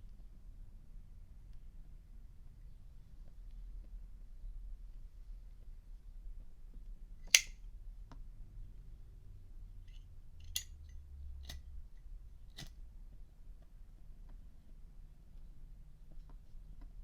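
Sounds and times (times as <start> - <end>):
lighter metal clicks: 7.3 - 7.6, 10.4 - 10.8.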